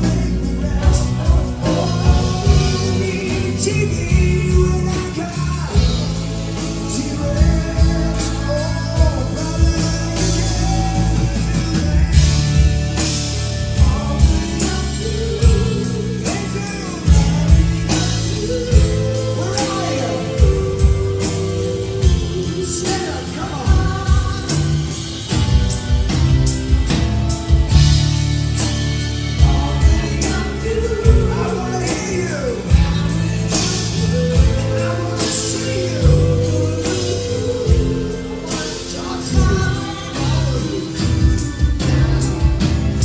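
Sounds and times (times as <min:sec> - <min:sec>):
lead vocal singing: 0:00.0 - 0:43.0
live rock band playing: 0:00.0 - 0:43.0.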